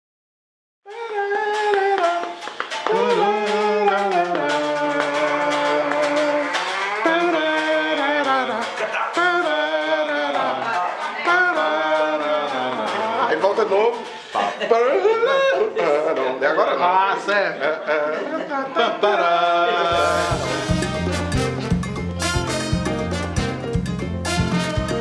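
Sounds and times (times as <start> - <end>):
plucked strings: 1.6 - 15.6, 19.9 - 25.0.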